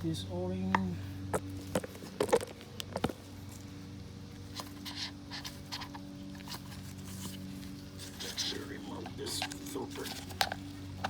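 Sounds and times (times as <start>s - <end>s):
steady low hum: 0.0s - 11.0s
soft rustling: 5.5s - 10.9s.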